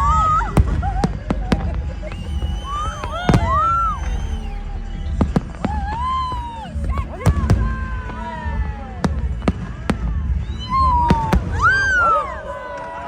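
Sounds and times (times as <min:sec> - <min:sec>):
fireworks whistling: 0:00.0 - 0:07.8
fireworks bangs: 0:00.0 - 0:12.9
crowd and city rumble: 0:00.0 - 0:13.0.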